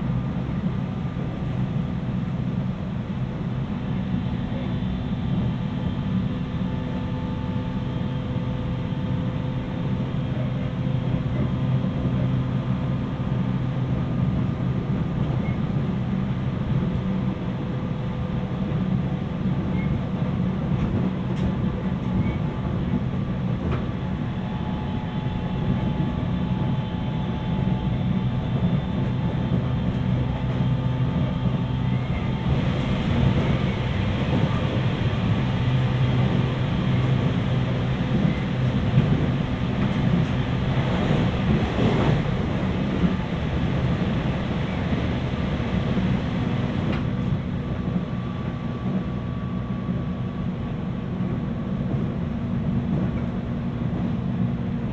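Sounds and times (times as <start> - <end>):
rail and wheel noise: 0.0 - 54.9
train motor hum: 20.8 - 54.9.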